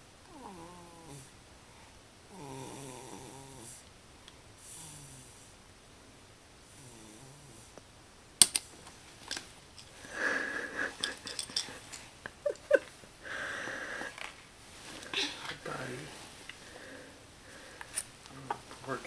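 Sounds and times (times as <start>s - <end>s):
baby snoring softly: 0.3s - 1.3s, 2.3s - 3.8s
sharp click: 8.4s - 8.7s.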